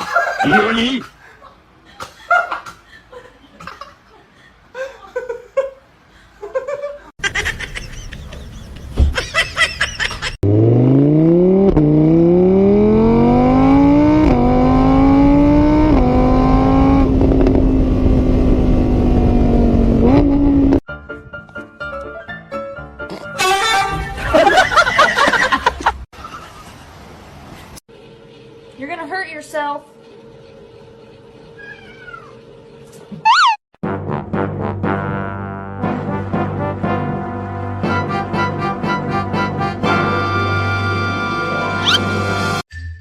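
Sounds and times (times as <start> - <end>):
car engine accelerating hard: 10.4 - 20.8.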